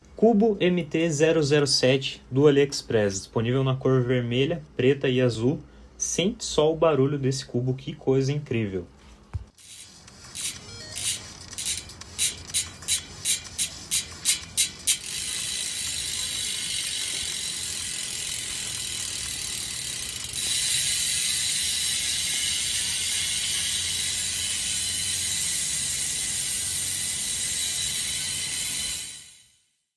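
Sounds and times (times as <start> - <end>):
bicycle hub ratchet clicking: 9.6 - 29.6.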